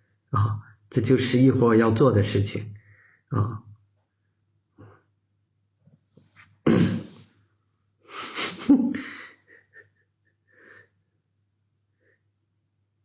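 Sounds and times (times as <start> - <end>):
man sneezing hard: 6.7 - 7.2.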